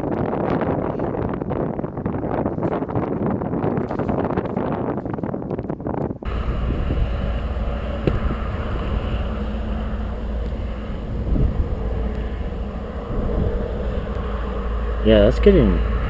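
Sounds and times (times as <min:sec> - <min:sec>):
vehicle road rumble and hiss: 0:06.2 - 0:16.0.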